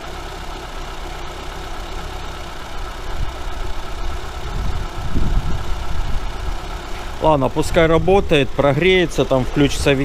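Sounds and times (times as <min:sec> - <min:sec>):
car engine idling: 0:00.0 - 0:10.0
low rumble: 0:02.6 - 0:10.0.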